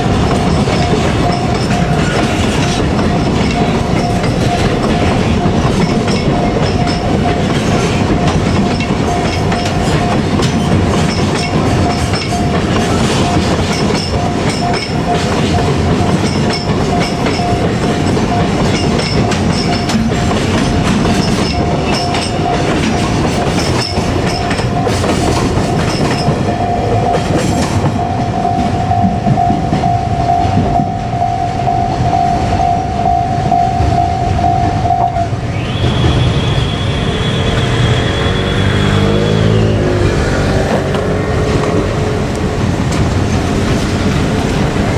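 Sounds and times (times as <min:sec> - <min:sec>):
held high tone: 0:23.8 - 0:40.1
vehicle running noise: 0:36.6 - 0:44.9.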